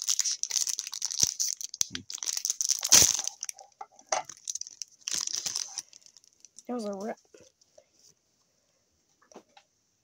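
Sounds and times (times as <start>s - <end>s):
wrapper crinkling and tearing: 0.0s - 6.7s.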